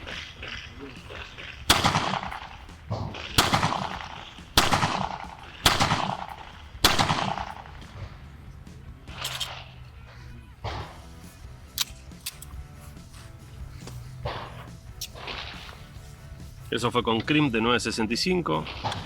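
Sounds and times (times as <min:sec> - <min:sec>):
pistol shots with echo: 0:01.2 - 0:08.2, 0:10.6 - 0:11.1, 0:18.6 - 0:19.0.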